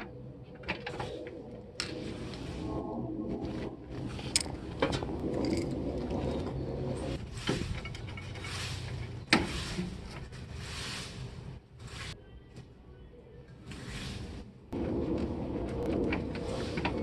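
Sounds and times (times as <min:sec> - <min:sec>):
scraping: 0:00.7 - 0:12.2
knocks and clattering of tools: 0:04.2 - 0:10.3.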